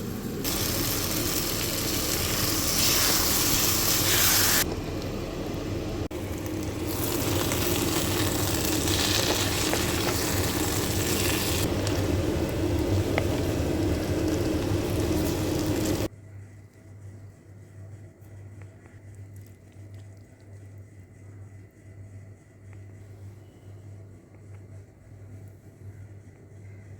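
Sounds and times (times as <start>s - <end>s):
root pieces sizzling in oil: 0.4s - 4.7s, 6.2s - 16.1s.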